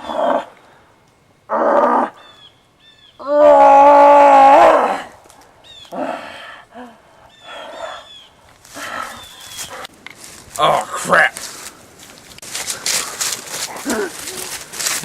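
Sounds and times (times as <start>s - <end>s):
scuffling noises: 8.5s - 15.0s.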